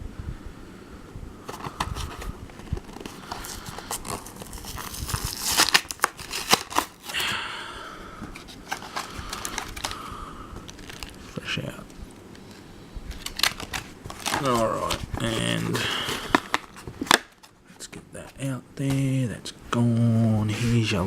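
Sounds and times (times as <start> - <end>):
plastic packaging crinkling: 1.5 - 7.3, 8.4 - 12.4, 13.1 - 17.6.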